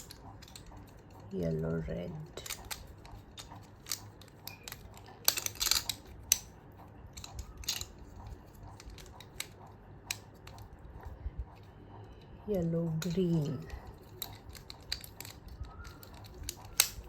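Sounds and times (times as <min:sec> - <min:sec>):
plastic rattles: 0:00.0 - 0:11.1, 0:12.8 - 0:17.0
plastic cube pieces clicking: 0:02.3 - 0:06.5, 0:07.2 - 0:10.8, 0:13.0 - 0:17.0.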